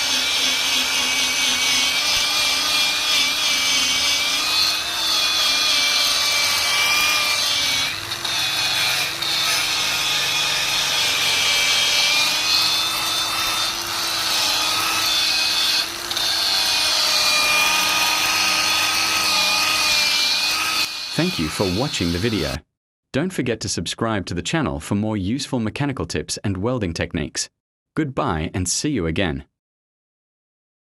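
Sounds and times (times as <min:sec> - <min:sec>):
power tool cleaning wheel on metal: 0:00.0 - 0:22.6.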